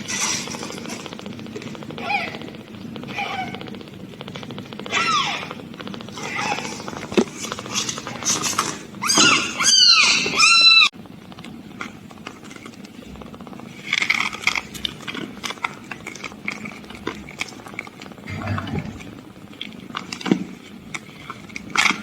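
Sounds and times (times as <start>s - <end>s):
kittens mewing: 0.0s - 4.1s, 4.7s - 10.9s, 18.3s - 19.4s
scratchy clicks of movement: 0.0s - 9.1s.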